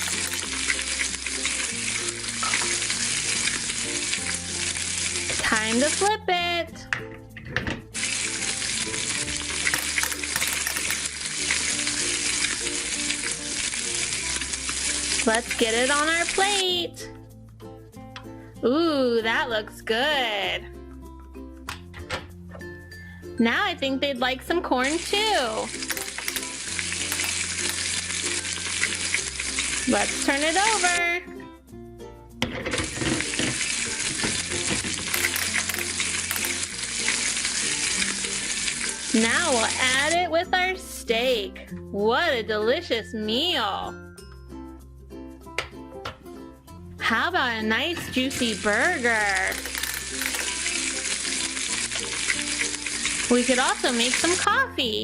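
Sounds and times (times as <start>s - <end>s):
steak sizzling in a pan: 0.0s - 6.1s, 8.0s - 16.6s, 24.8s - 31.0s, 32.8s - 40.2s, 48.2s - 54.5s
faint background music: 0.0s - 55.0s.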